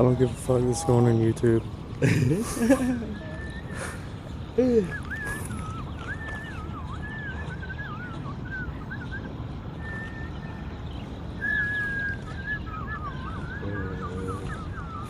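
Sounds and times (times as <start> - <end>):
warbling whistle: 4.8 - 10.7, 11.4 - 15.0.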